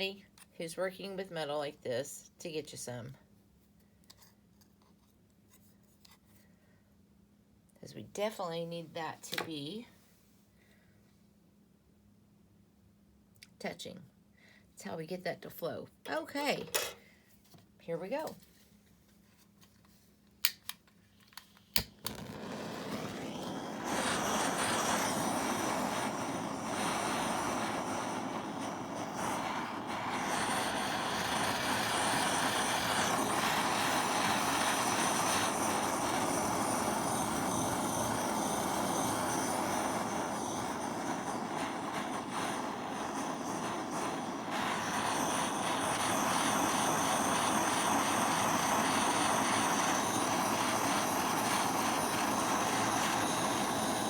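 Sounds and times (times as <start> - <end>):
torch igniter clicks: 20.4 - 54.0
rushing torch flame: 21.8 - 54.0.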